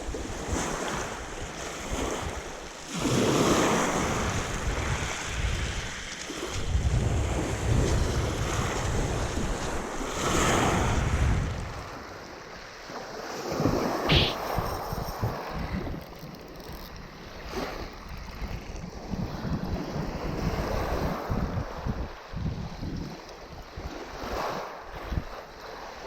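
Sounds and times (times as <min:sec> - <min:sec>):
wind rumbling on microphone: 0:00.0 - 0:12.2, 0:13.6 - 0:25.5
sea waves washing onto beach: 0:00.0 - 0:14.6
high squeak: 0:14.1 - 0:15.4.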